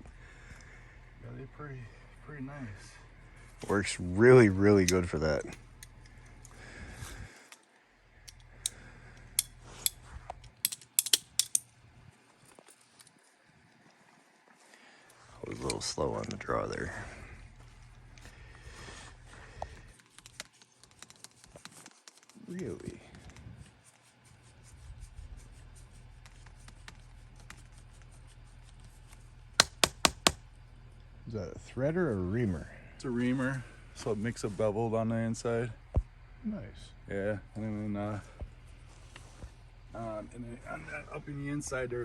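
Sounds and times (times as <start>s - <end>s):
low hum: 0.0s - 20.4s, 30.3s - 42.0s
sharp mechanical clicks: 9.4s - 11.7s.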